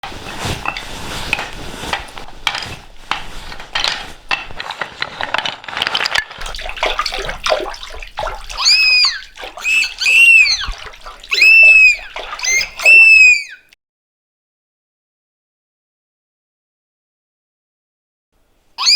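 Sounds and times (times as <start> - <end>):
water splashing and sloshing: 0.0 - 13.7
water dripping clicks: 3.1 - 13.5
high squeaky calls: 6.6 - 13.8.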